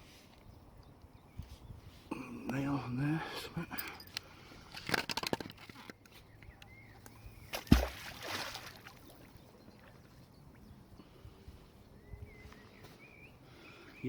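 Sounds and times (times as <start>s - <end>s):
faint bird chirping: 6.0s - 7.6s, 8.9s - 14.0s
object splashing into river: 7.5s - 9.3s.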